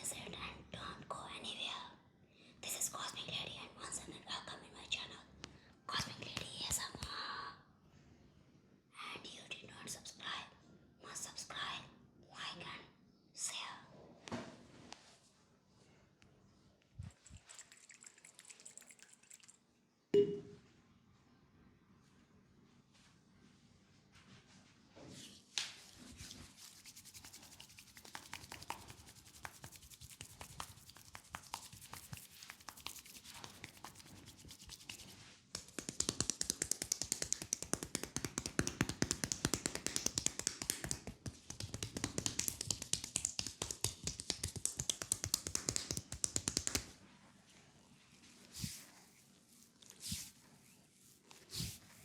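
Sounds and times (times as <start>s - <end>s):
hands tapping on skin: 27.1s - 46.9s.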